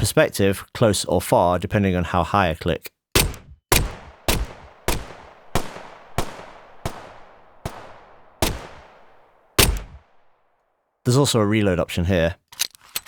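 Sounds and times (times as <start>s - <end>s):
pistol gunshots with reverb: 3.2s - 10.5s.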